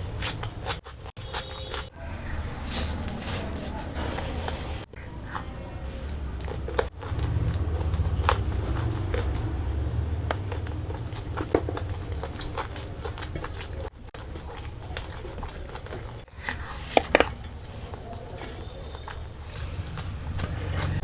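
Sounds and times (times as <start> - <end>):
close chewing and mouth sounds: 0.0 - 21.0
low rumble: 6.9 - 13.8.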